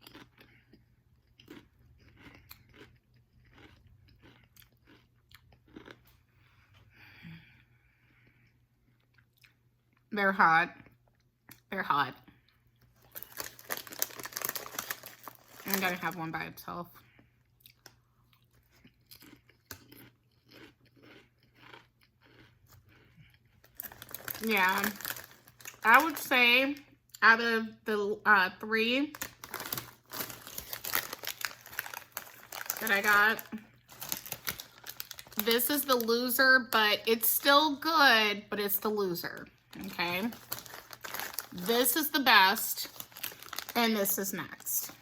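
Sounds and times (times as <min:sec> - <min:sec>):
crunching and chewing chip: 0:00.0 - 0:06.9, 0:12.4 - 0:16.2, 0:17.5 - 0:26.3, 0:29.1 - 0:36.1, 0:39.4 - 0:42.0, 0:42.8 - 0:44.2.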